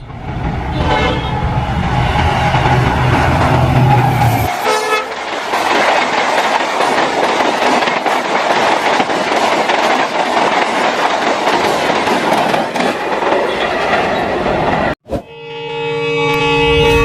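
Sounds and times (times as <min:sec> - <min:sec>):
train wheels clattering over rail joints: 0:05.1 - 0:13.6
brief pitched note: 0:15.1 - 0:17.0.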